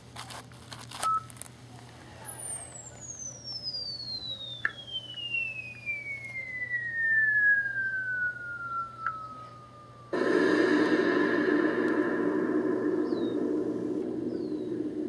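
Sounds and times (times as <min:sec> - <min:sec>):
falling bomb whistle: 0:04.1 - 0:15.0
loud explosion: 0:10.2 - 0:15.0.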